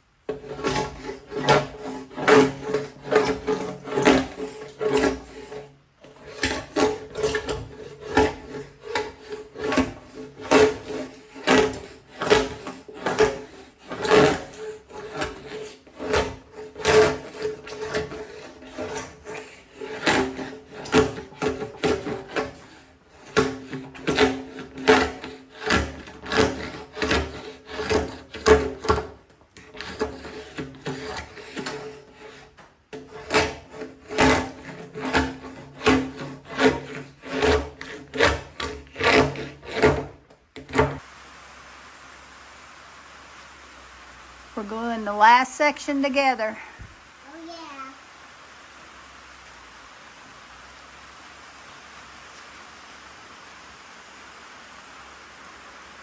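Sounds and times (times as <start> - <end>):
hand scraper rasping on wood: 0.3 - 41.0.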